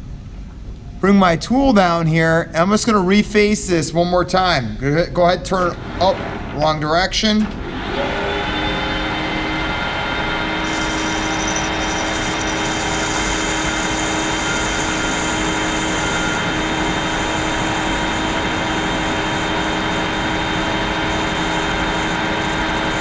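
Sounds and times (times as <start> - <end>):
metal lathe motor whine: 7.5 - 23.0
high cutting hiss: 8.0 - 23.0.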